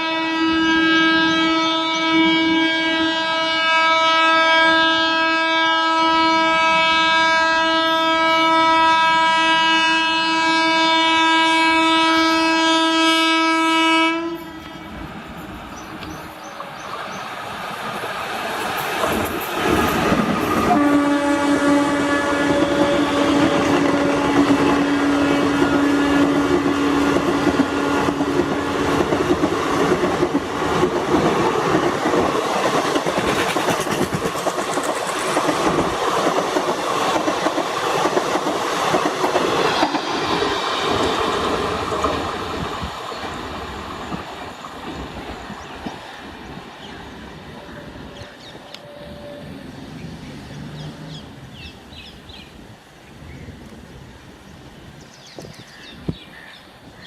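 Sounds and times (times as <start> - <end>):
locomotive horn blast: 0.0 - 15.1, 20.6 - 29.1, 47.6 - 49.8
train wheels clacking on rails: 14.6 - 21.4, 22.3 - 46.1.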